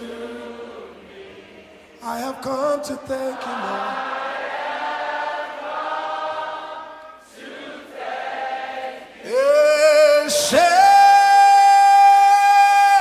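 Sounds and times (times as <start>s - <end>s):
congregation singing a cappella: 0.0s - 13.0s.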